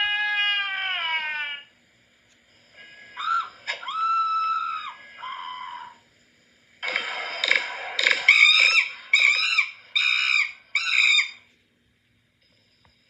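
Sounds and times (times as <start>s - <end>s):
cartoon screams: 0.0s - 1.7s, 3.2s - 6.0s.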